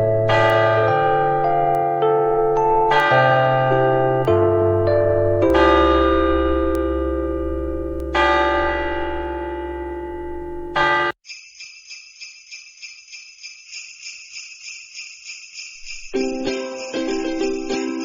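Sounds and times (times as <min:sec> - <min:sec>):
ringing musical chord: 0:00.0 - 0:11.1
jingle bells shaken: 0:11.2 - 0:18.0.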